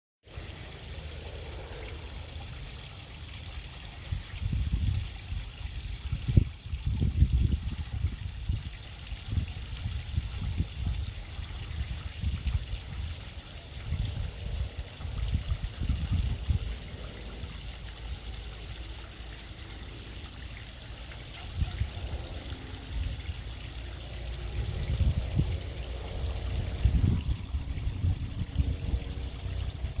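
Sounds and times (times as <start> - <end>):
falling water splashing: 0.3 - 30.0
low rumble: 24.3 - 30.0.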